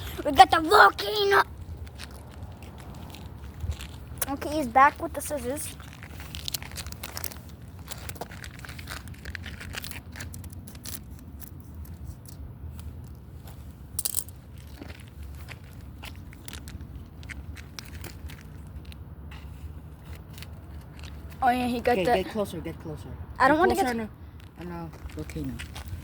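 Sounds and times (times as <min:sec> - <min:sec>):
packaging crinkling and tearing: 0:05.7 - 0:12.4.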